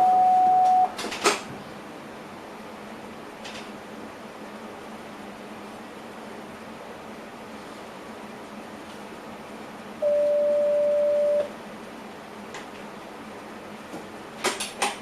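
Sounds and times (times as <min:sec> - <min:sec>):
electronic warning beep: 0:00.0 - 0:00.9, 0:10.0 - 0:11.5
train cab hum: 0:00.0 - 0:15.0.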